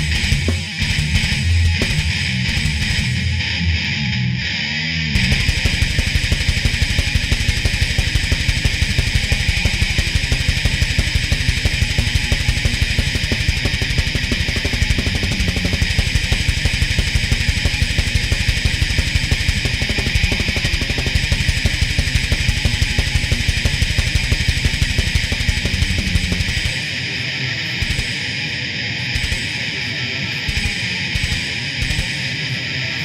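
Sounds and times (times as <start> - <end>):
fast driving drums: 0.0 - 3.4, 5.2 - 27.1, 27.8 - 28.4, 29.1 - 29.8, 30.4 - 32.4
distorted electric guitar: 0.0 - 33.0.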